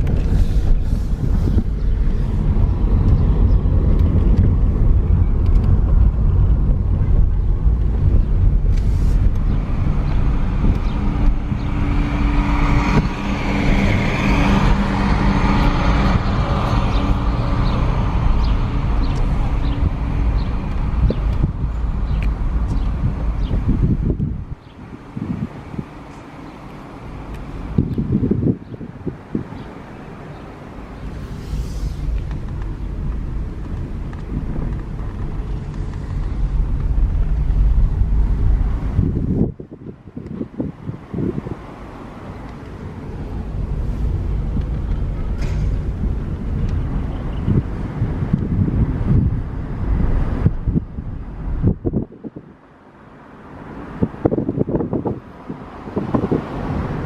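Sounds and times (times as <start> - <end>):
heavy low rumble: 0.0 - 52.8
vehicle engine and road drone: 0.0 - 57.0.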